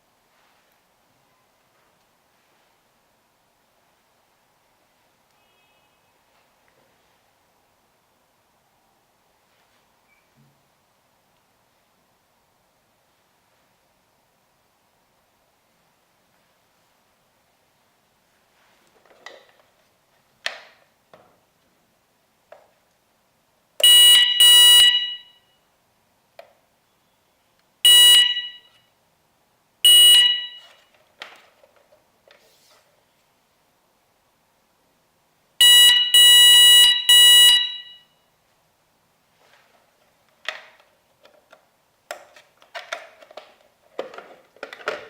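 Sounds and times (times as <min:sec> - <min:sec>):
shrill electronic alarm beeps: 0:23.9 - 0:25.4, 0:27.9 - 0:28.7, 0:29.9 - 0:30.8, 0:35.6 - 0:38.1.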